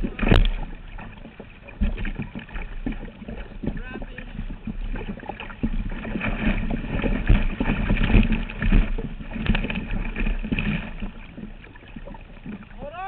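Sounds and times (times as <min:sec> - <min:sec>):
microphone rumble: 0:00.0 - 0:12.7
paddle splashing water: 0:00.0 - 0:13.0.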